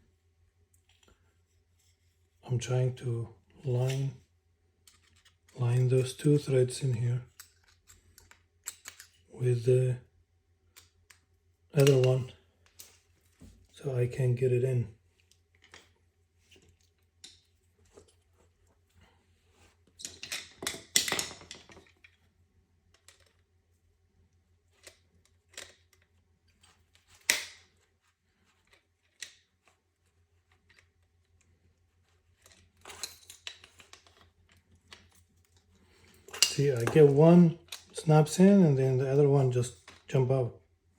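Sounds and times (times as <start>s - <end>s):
light clicks and metallic rattles: 7.3s - 9.3s, 32.3s - 38.1s.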